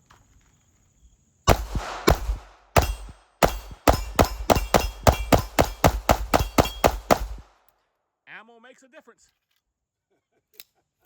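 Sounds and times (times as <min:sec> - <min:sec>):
pistol shots: 0:01.5 - 0:07.5.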